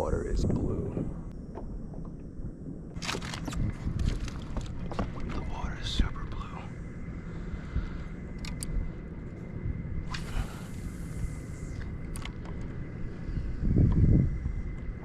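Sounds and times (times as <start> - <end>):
wind buffeting microphone: 0.0 - 15.0
small clicks: 8.4 - 8.8, 11.7 - 12.8.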